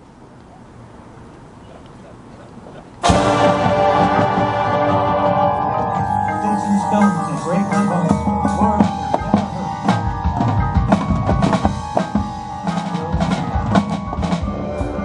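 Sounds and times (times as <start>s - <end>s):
snare drum rolls and rim hits: 3.0s - 5.5s
held pitched notes: 3.0s - 15.0s.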